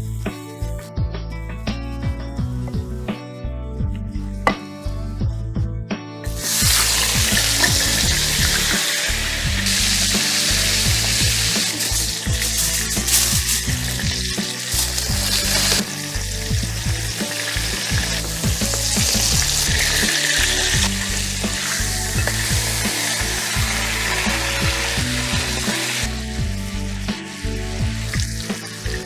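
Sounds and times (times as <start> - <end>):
chicken sizzling in a pan: 6.4 - 29.0.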